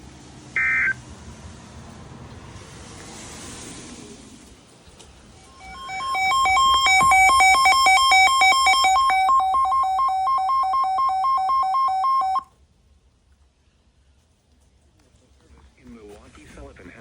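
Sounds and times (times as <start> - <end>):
two-pitch electronic beeps: 0.6 - 1.0, 5.5 - 12.4.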